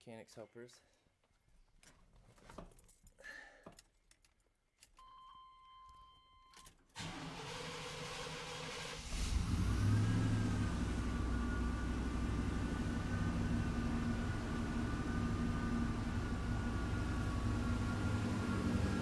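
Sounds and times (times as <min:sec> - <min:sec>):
keys clicking: 0:03.7 - 0:05.1
engine cranking on starter: 0:07.0 - 0:12.0
steady ignition tone: 0:07.0 - 0:19.0
engine running: 0:07.1 - 0:19.0.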